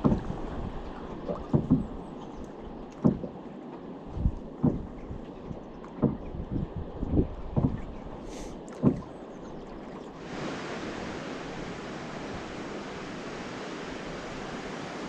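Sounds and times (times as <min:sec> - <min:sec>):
dull thump: 0:00.0 - 0:00.3, 0:01.5 - 0:01.9, 0:03.0 - 0:03.3, 0:04.2 - 0:05.2, 0:06.0 - 0:06.3, 0:07.6 - 0:07.8, 0:08.8 - 0:09.1
river water rushing: 0:10.2 - 0:15.0.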